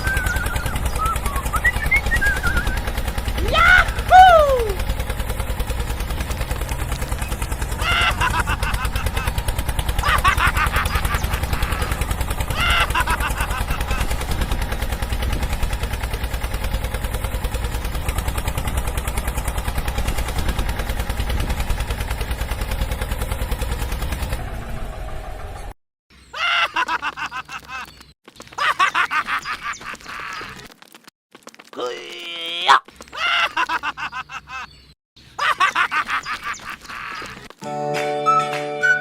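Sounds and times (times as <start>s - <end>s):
small engine chugging: 0.0s - 25.8s, 35.4s - 37.5s.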